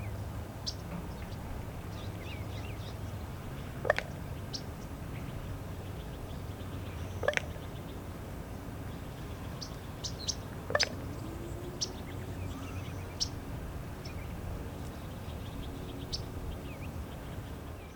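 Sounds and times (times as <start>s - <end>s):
raven popping calls: 3.8s - 4.2s, 7.2s - 7.6s, 10.7s - 11.2s.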